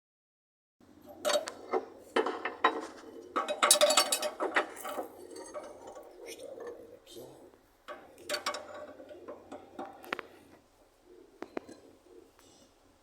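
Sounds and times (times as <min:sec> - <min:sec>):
faint low hum: 0:00.8 - 0:13.0
metallic clicking and clattering: 0:01.1 - 0:06.8.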